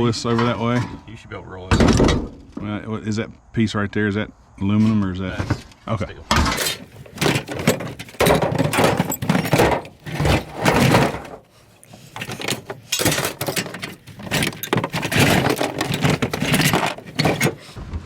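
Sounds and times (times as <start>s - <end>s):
scrap metal clattering: 6.4s - 17.8s.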